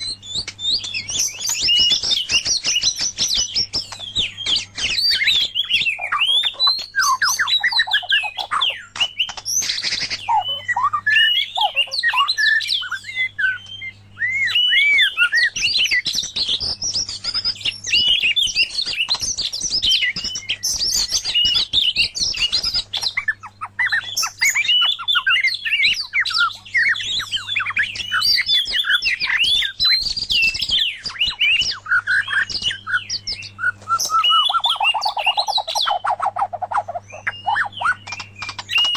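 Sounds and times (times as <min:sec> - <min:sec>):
birds singing whistles and trills: 0:00.0 - 0:38.9.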